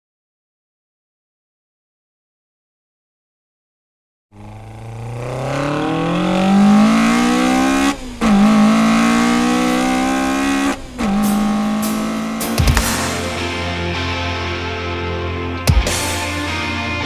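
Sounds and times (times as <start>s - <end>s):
car engine accelerating: 4.4s - 15.5s.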